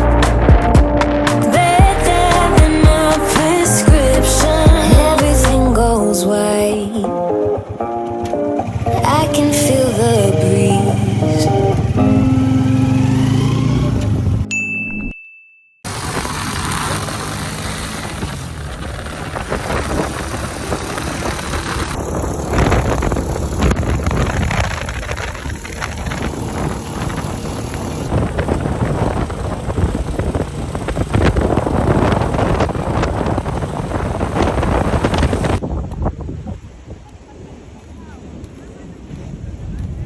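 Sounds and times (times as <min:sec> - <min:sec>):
vehicle engine running: 0:00.0 - 0:06.0, 0:08.7 - 0:14.5, 0:15.9 - 0:35.6
wind rushing over microphone: 0:15.9 - 0:40.0.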